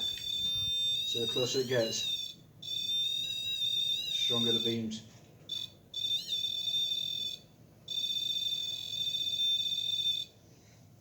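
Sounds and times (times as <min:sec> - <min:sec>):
high electronic alarm beep: 0:00.0 - 0:04.8.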